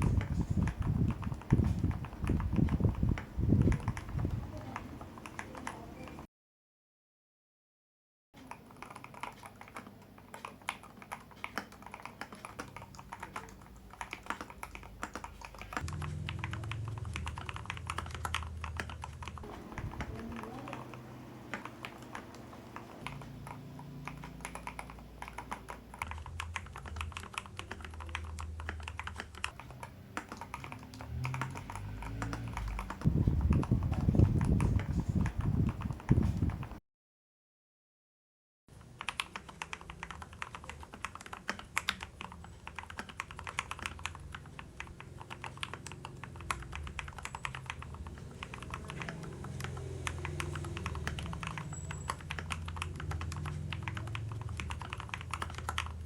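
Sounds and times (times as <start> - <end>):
mechanical keyboard typing: 0.0 - 6.3, 8.4 - 36.8, 38.8 - 56.0
low rumble: 15.8 - 20.5.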